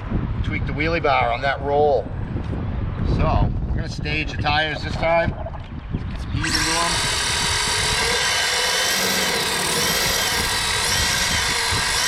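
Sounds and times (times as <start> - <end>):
electric motor whining: 6.4 - 12.0.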